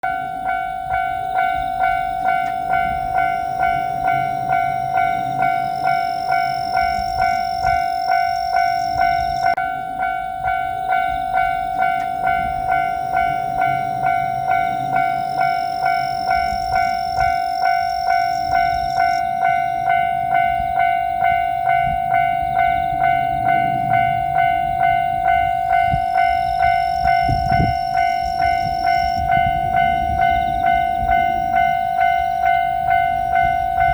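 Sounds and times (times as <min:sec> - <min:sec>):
level crossing bell dinging: 0:00.0 - 0:33.9.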